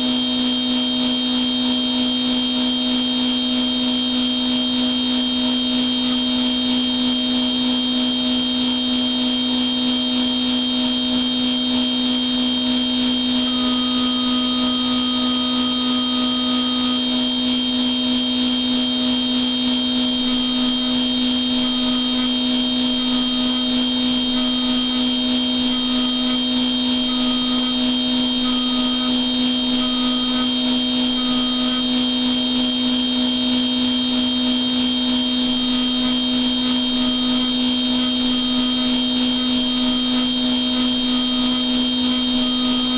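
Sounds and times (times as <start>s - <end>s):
machine tool two-tone whine: 0.0s - 42.9s
mid-pitched tone pips: 11.7s - 42.9s.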